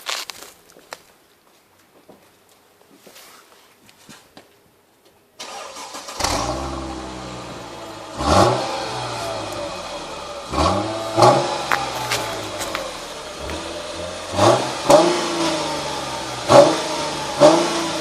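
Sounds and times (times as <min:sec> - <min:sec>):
car engine starting and idling: 0:05.4 - 0:18.0
engine throttle blips: 0:05.5 - 0:18.0.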